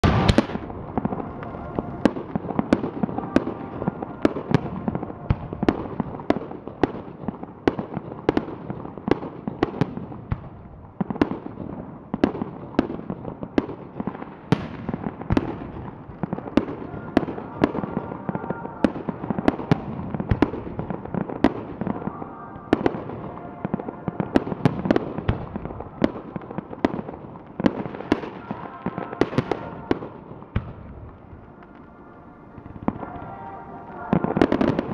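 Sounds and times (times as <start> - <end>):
fireworks bursting with bangs: 0.0 - 34.9.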